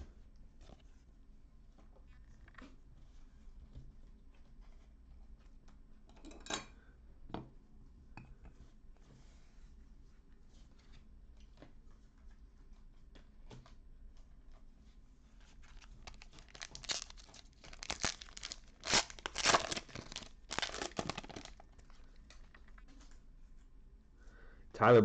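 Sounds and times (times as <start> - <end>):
wrapper tearing and crinkling: 15.6 - 22.7.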